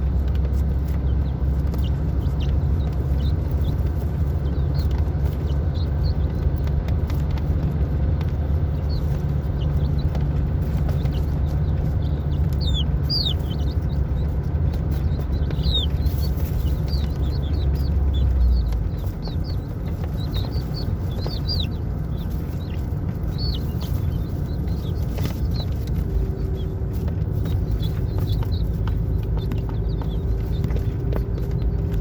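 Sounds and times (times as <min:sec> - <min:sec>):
chicks peeping: 0:00.0 - 0:32.0
steady low rumble: 0:00.0 - 0:32.0.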